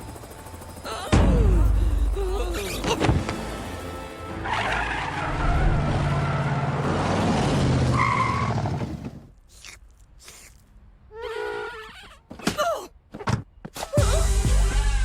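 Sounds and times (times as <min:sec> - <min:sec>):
music: 0:00.1 - 0:04.8, 0:14.0 - 0:15.0
tyres skidding and screeching: 0:02.8 - 0:09.4.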